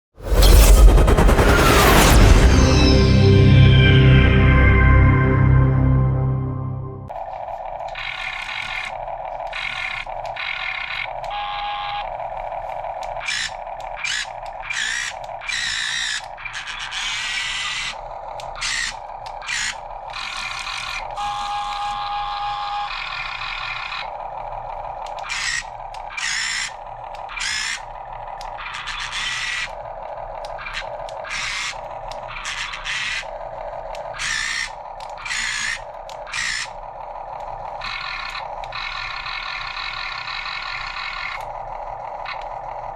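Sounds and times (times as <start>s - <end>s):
steady hum: 0.2s - 7.1s
small electric motors whining: 7.2s - 42.9s.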